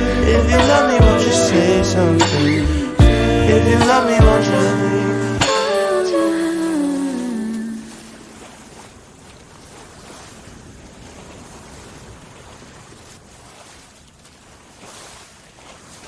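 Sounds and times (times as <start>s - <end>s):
held sung note: 0.0s - 8.2s.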